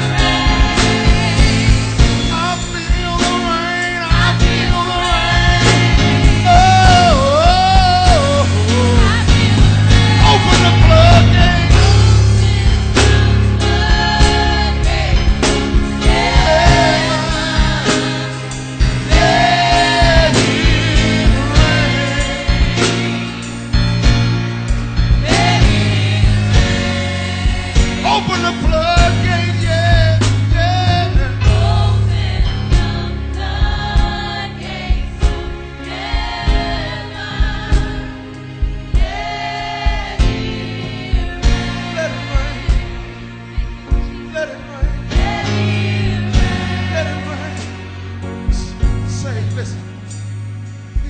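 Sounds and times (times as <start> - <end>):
person singing gospel: 0.0 - 24.0, 25.0 - 49.9
band playing praise music: 0.0 - 51.0
bass: 0.0 - 51.0
steady drum beat: 0.0 - 51.0.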